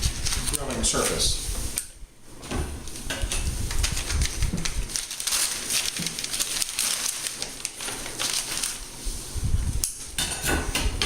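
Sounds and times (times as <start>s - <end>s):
plastic wrapping crinkling: 0.0s - 1.4s, 3.6s - 9.1s.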